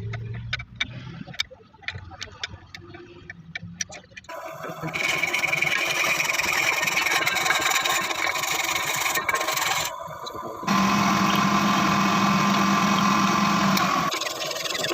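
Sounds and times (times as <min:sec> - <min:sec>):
machine hum: 0:04.3 - 0:14.9
metal scraping and grinding: 0:04.6 - 0:10.6.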